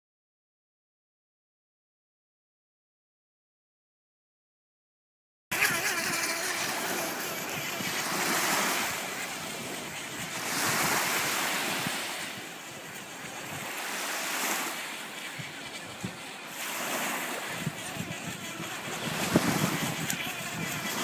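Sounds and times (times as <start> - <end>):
rushing water: 5.6 - 21.0
wind buffeting microphone: 6.9 - 14.6, 15.2 - 21.0.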